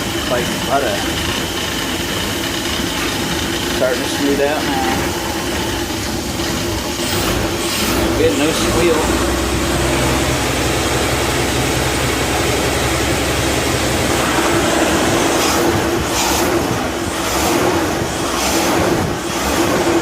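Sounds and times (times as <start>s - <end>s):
engine idling: 0.0s - 20.0s.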